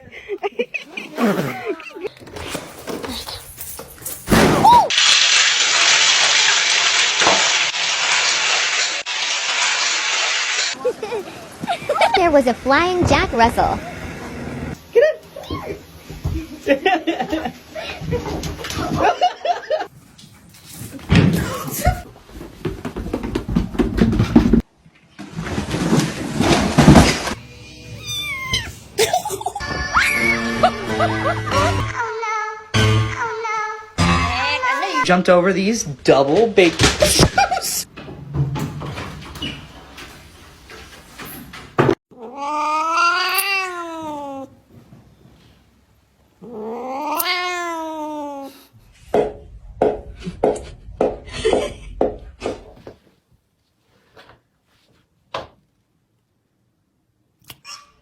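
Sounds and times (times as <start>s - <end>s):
cat meowing: 27.5s - 28.9s, 42.2s - 44.5s, 46.4s - 48.6s.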